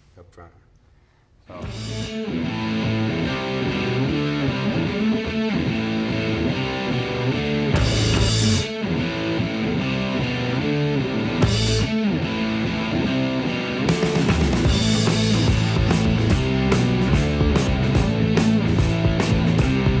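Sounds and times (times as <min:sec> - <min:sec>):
rock music with electric guitar: 0:01.6 - 0:20.0.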